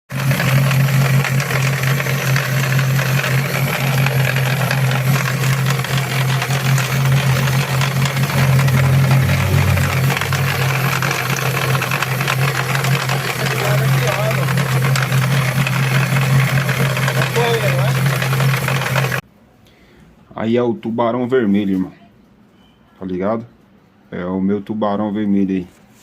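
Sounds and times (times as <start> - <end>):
car engine running: 0.1 - 19.2
fast engine ticking: 0.1 - 19.2.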